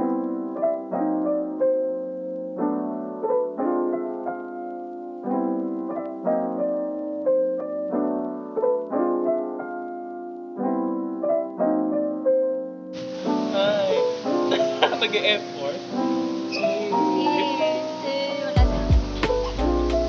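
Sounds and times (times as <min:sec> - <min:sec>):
soft piano music: 0:00.0 - 0:20.0.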